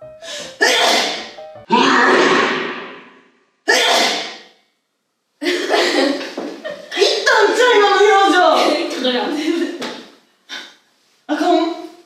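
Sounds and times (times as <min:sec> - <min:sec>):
sudden bursts with echoing tail: 0:01.7 - 0:03.5.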